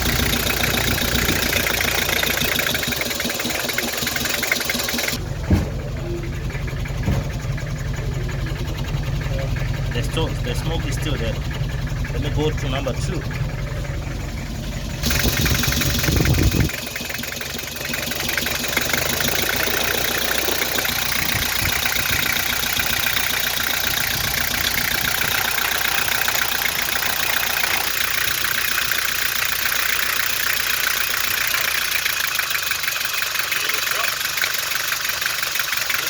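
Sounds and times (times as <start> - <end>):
diesel engine idling roughly: 0.0 - 36.0
loud low rumble: 5.2 - 16.9, 18.2 - 29.1.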